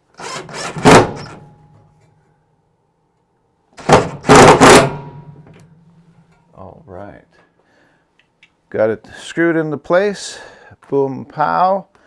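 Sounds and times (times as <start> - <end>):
screw driver bursts: 0.2 - 1.4.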